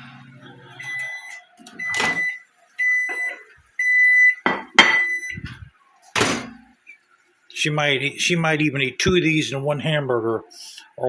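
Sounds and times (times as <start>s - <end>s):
high-pitched appliance beeps: 0.7s - 5.7s
kitchenware knocking and clattering: 4.4s - 5.2s.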